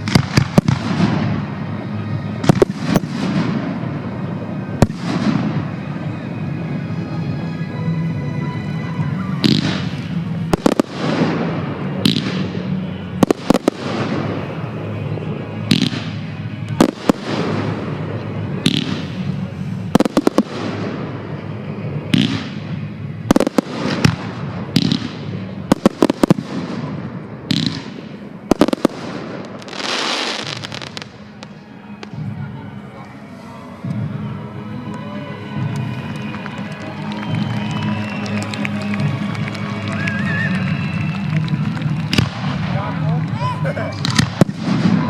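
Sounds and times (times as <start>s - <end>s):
fireworks banging: 0.0s - 6.4s, 9.3s - 32.9s, 40.7s - 45.0s
fireworks hissing: 9.1s - 34.8s.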